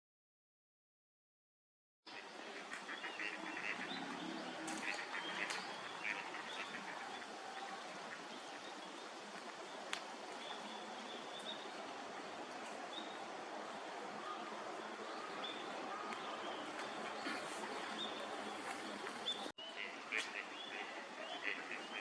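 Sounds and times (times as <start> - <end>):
ducks calling: 2.1 - 8.5, 15.9 - 22.0
outdoor hiss: 2.1 - 21.8.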